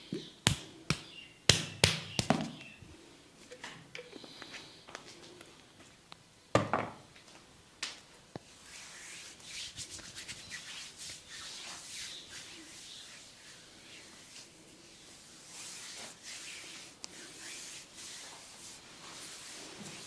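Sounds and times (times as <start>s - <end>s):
hands rubbing hair and scalp: 8.4s - 20.0s.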